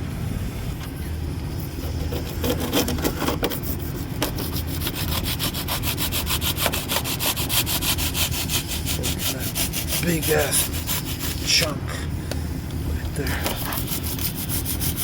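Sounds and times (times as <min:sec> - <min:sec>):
cutter blade sawing through foam: 0:02.0 - 0:11.7, 0:13.5 - 0:15.0.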